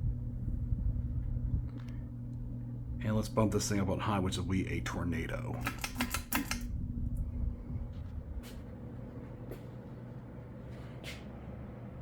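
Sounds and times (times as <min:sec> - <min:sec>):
ceiling fan motor humming: 0:00.0 - 0:12.0
pull-chain switch clicks: 0:05.6 - 0:06.7
air rushing from fan blades: 0:06.6 - 0:11.8.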